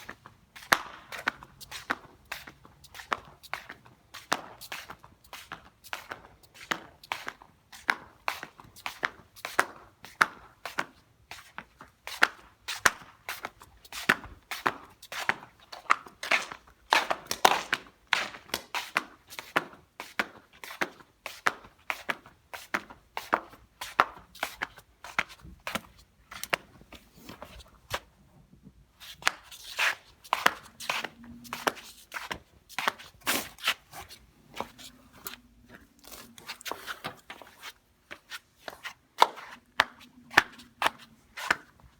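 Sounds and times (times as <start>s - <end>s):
flip-flops slapping: 14.0s - 19.6s, 29.0s - 41.9s.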